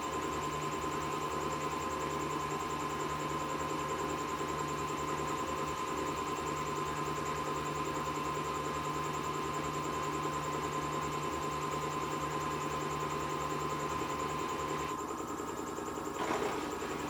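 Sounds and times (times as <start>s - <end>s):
washing machine running: 13.0s - 17.0s.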